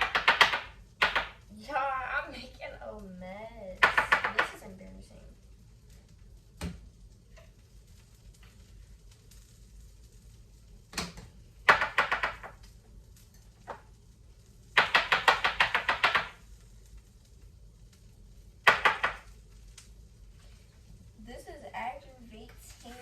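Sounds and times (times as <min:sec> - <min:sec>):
rapid tapping on hard object: 0:00.0 - 0:01.4, 0:03.8 - 0:04.6, 0:11.7 - 0:12.6, 0:14.8 - 0:16.4, 0:18.6 - 0:19.3.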